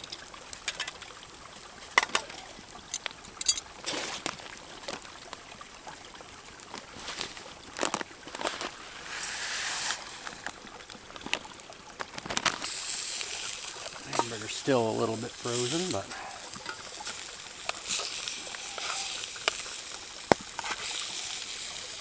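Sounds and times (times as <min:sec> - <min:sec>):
sharp clicks and crackles: 0:00.0 - 0:08.8, 0:10.2 - 0:22.0
river water running: 0:00.0 - 0:22.0
hissing rush: 0:08.9 - 0:10.6, 0:12.7 - 0:19.8.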